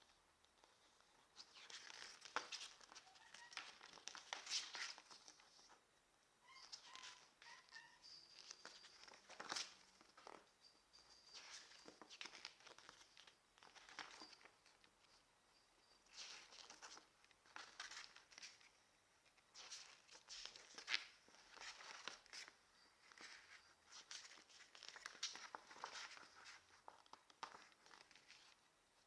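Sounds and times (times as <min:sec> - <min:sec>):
paper and packaging rustling: 0:19.6 - 0:28.6.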